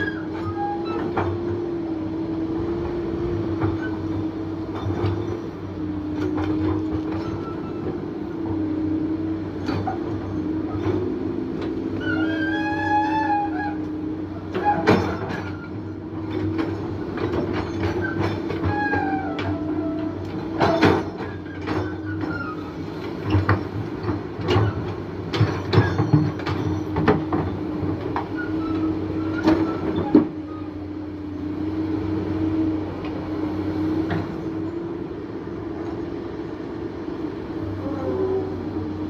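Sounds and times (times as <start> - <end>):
excavator engine with whine: 0.0 - 39.0
metallic clanks and knocks: 20.3 - 22.4.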